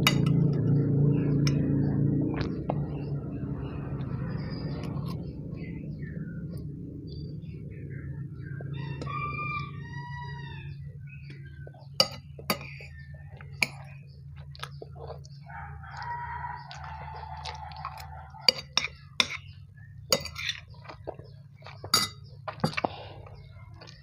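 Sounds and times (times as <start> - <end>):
steady low hum: 0.0 - 24.0
utensils clinking on dish: 12.0 - 12.9, 18.5 - 19.4, 20.1 - 20.7, 21.9 - 22.8.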